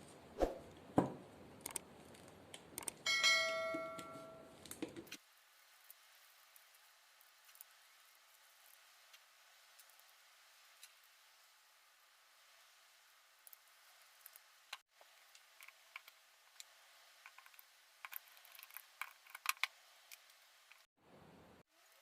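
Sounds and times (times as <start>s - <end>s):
clicks of small hard parts: 1.6s - 3.0s.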